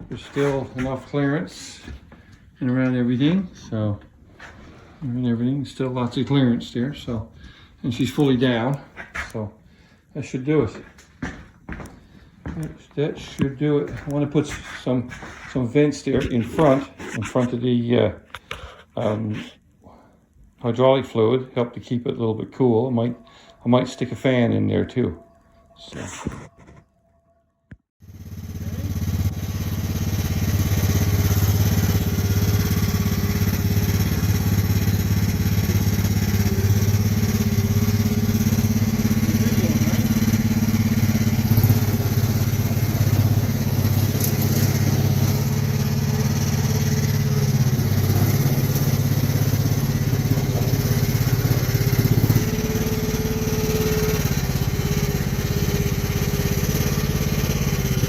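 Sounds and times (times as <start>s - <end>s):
small engine running: 28.0s - 58.0s.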